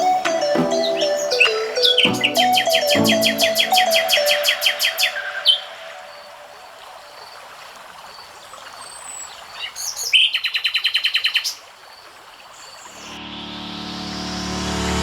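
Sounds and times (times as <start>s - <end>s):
music with low tone: 0.0s - 4.4s, 13.0s - 15.0s
songbird chirping and trilling: 0.0s - 7.2s.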